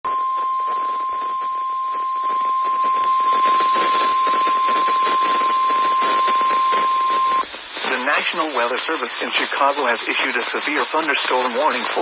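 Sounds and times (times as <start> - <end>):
steady high alarm tone: 0.0 - 7.4
noisy hiss: 0.1 - 12.0.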